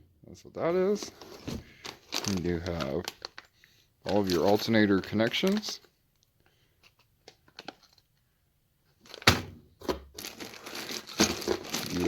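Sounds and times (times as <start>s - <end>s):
plastic packaging crinkling: 0.9s - 8.2s, 9.0s - 9.3s, 10.1s - 12.0s.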